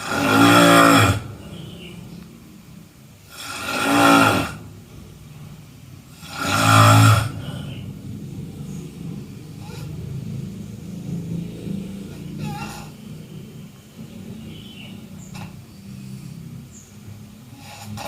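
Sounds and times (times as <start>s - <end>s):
person snoring: 3.3s - 4.6s, 6.2s - 7.8s.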